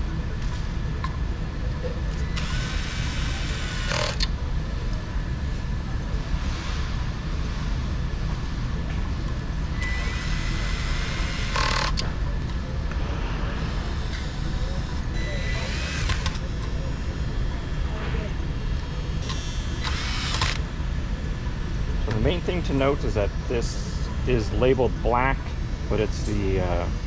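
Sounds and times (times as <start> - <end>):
steady low rumble: 0.0 - 11.2, 12.0 - 27.0.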